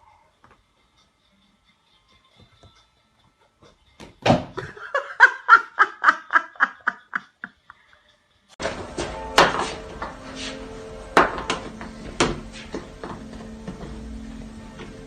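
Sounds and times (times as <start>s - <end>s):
person laughing: 4.6s - 8.0s.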